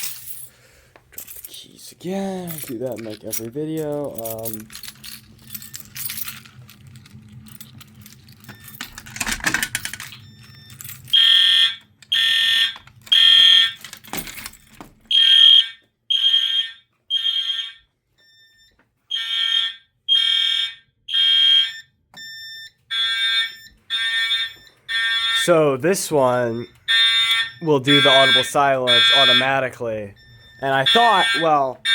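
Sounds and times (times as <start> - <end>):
fire alarm horn blasts: 10.2 - 13.8, 15.1 - 31.9.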